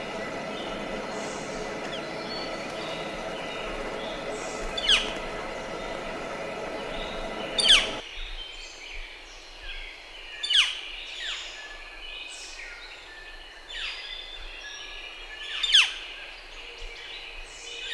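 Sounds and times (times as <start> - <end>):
noisy background hum: 0.0 - 8.0.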